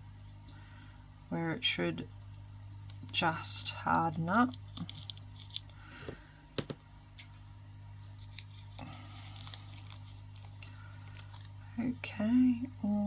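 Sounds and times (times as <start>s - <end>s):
steady low hum: 0.0s - 13.0s
plastic pieces rustling: 4.0s - 5.8s, 8.2s - 11.6s.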